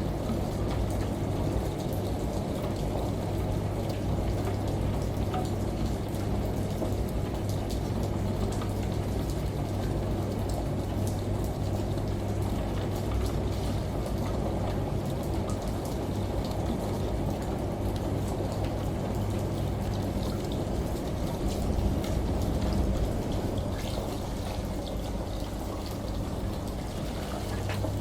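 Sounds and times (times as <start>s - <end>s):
steady rain: 0.0s - 28.0s
washing machine hum: 0.0s - 28.0s
raindrops ticking: 0.2s - 28.0s.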